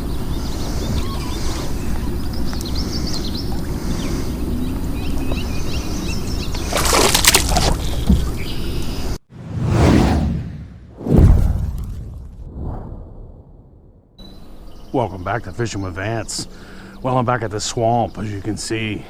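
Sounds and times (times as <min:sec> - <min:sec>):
small birds chirping: 0:00.0 - 0:09.2, 0:14.2 - 0:19.0
water sloshing: 0:06.4 - 0:08.5
rushing water splash: 0:06.6 - 0:08.0
whoosh: 0:09.3 - 0:14.2
steady low rumble: 0:09.4 - 0:14.2.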